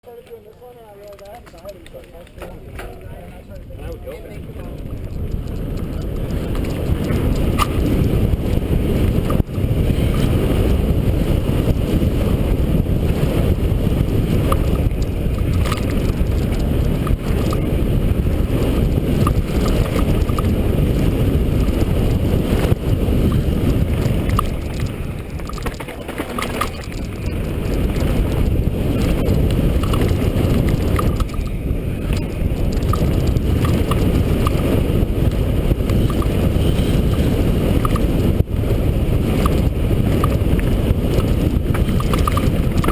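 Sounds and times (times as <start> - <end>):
bike clicks and rattles: 0.1 - 42.9
wind buffeting microphone: 0.1 - 42.9.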